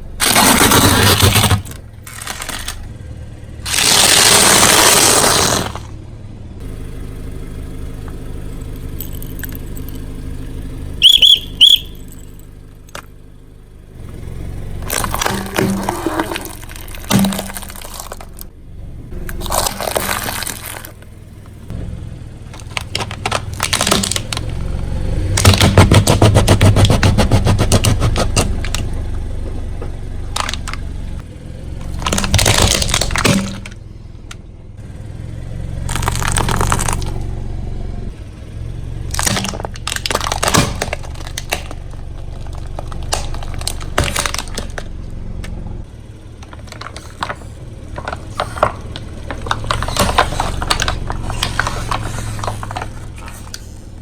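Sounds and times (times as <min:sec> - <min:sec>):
tyres crushing brittle objects: 0:00.0 - 0:02.9, 0:03.6 - 0:05.9, 0:14.7 - 0:18.5, 0:19.2 - 0:21.7, 0:22.5 - 0:29.1, 0:30.3 - 0:31.2, 0:31.8 - 0:33.8, 0:35.9 - 0:37.2, 0:39.1 - 0:44.9, 0:46.4 - 0:54.0
car low rumble: 0:00.0 - 0:54.0.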